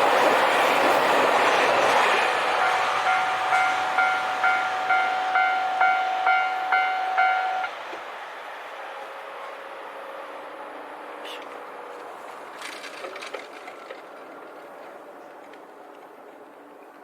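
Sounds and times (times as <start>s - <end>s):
diesel train passing: 0.0s - 17.0s
level crossing alarm ringing: 2.6s - 7.7s.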